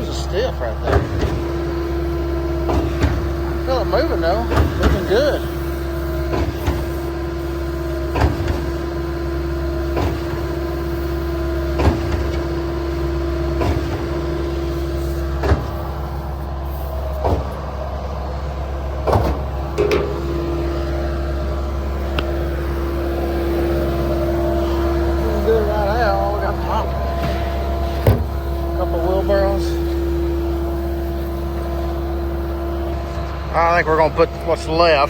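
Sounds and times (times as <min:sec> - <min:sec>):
pump knocking: 0:00.0 - 0:16.4, 0:17.0 - 0:17.9, 0:18.9 - 0:33.2
engine drone: 0:00.0 - 0:35.0
steady pump whine: 0:00.0 - 0:35.0.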